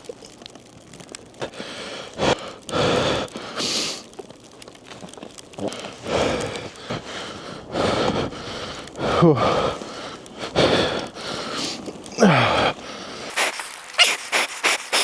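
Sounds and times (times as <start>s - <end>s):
person breathing hard: 1.4s - 4.1s, 5.6s - 15.0s
crunching in snow: 13.3s - 15.0s.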